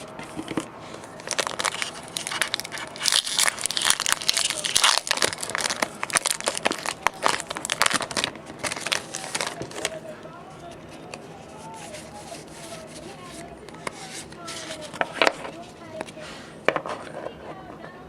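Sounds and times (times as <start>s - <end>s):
foil wrapper crinkling and tearing: 0.0s - 10.0s, 10.7s - 16.1s.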